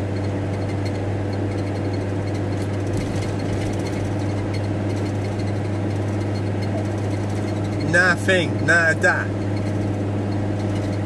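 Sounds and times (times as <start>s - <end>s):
road and cabin noise: 0.0s - 11.0s
van engine hum: 0.0s - 11.0s.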